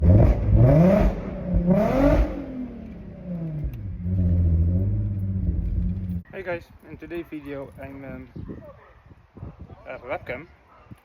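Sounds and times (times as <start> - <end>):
car engine revving then idling: 0.0 - 6.2.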